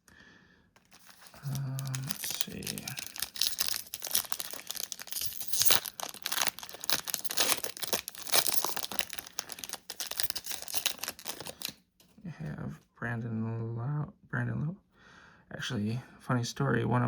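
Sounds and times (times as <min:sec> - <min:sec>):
wrapper crinkling and tearing: 0:00.8 - 0:11.8.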